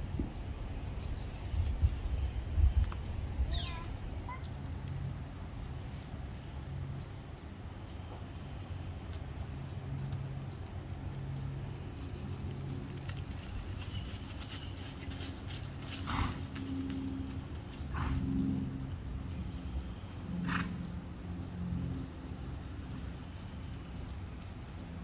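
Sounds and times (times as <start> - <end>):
wind buffeting microphone: 0.0 - 4.3.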